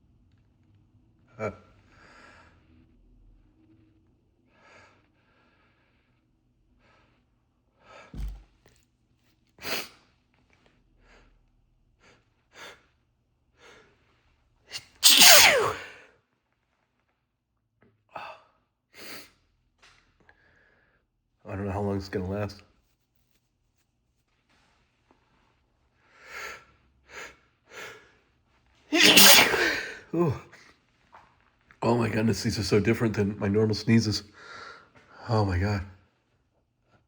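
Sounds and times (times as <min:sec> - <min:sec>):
man sneezing: 0:14.8 - 0:16.0, 0:28.9 - 0:30.4
short sharp breaths: 0:28.9 - 0:30.1, 0:34.4 - 0:35.2.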